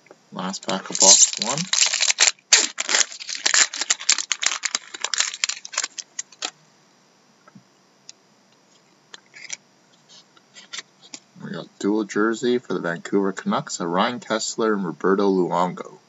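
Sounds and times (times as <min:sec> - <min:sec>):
foil wrapper crinkling and tearing: 0:00.6 - 0:06.5.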